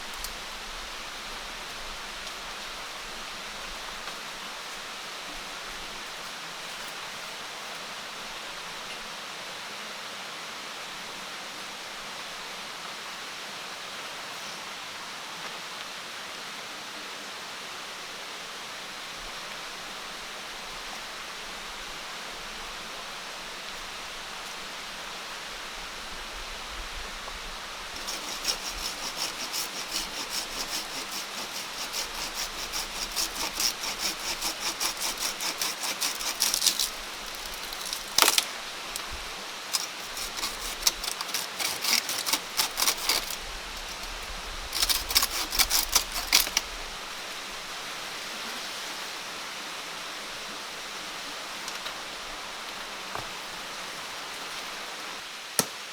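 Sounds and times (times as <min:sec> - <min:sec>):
hiss of water: 0:47.1 - 0:55.6.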